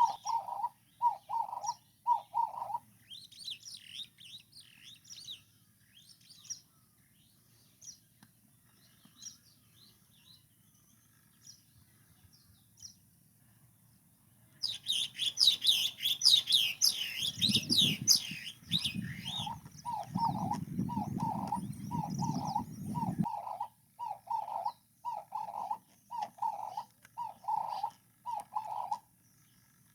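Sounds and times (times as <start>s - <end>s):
low repeating bird call: 0.0s - 2.9s, 14.6s - 29.1s
small birds chirping: 0.0s - 29.9s.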